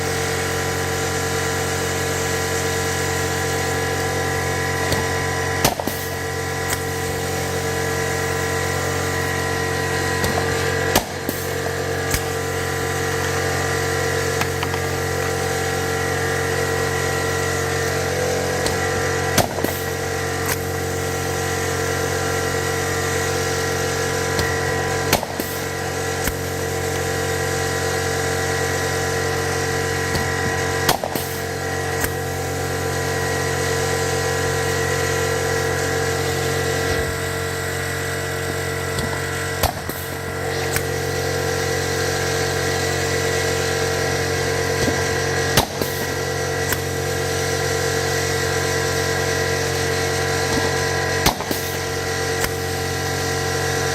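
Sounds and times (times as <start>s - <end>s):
machine hum: 0.0s - 53.9s
rivet tool sharp snaps: 12.1s - 12.3s, 20.4s - 20.6s, 52.4s - 52.6s.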